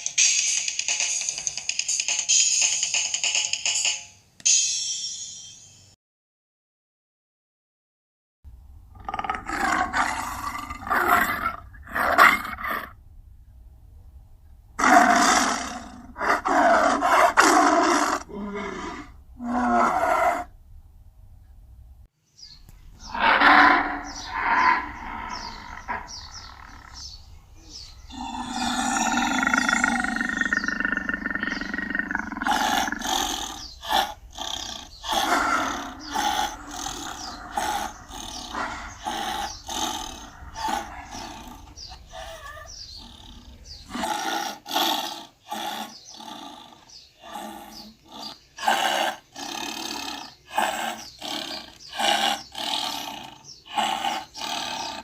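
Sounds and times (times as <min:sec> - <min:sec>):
tiger grunting calls: 0:08.9 - 0:13.0, 0:14.8 - 0:20.5, 0:23.0 - 0:55.0
tiger roaring: 0:08.9 - 0:13.0, 0:14.8 - 0:20.5, 0:23.0 - 0:55.0.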